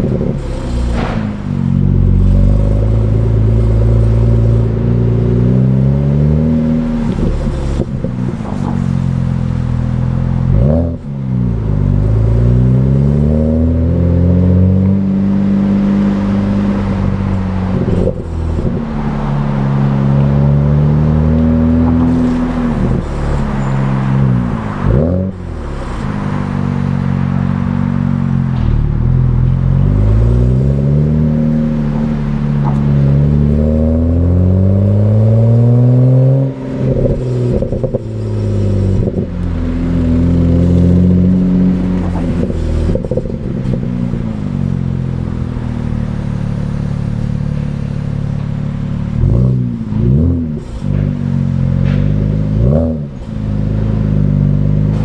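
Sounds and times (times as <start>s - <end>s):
car engine revving through gears: 0.0s - 55.0s.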